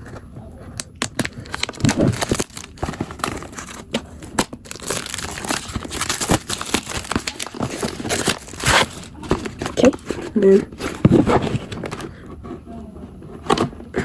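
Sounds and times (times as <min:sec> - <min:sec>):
plastic packaging crinkling: 0:00.0 - 0:12.2.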